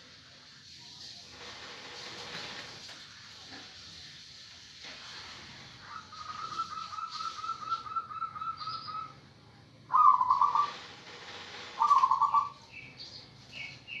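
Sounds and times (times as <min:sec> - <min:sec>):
small birds chirping: 0:05.8 - 0:10.7, 0:11.8 - 0:14.0
dove cooing: 0:05.9 - 0:09.1, 0:09.9 - 0:10.8, 0:11.8 - 0:12.6.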